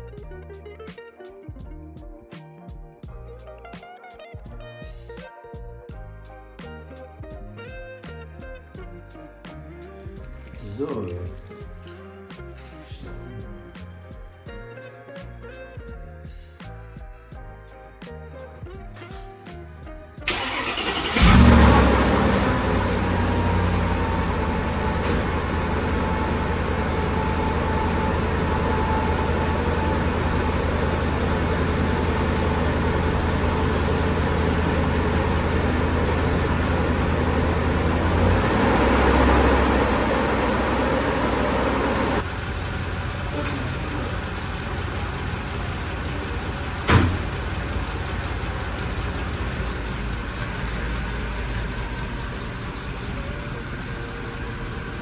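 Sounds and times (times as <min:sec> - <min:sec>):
car engine starting and idling: 0:20.3 - 0:55.0
engine revving: 0:20.3 - 0:55.0.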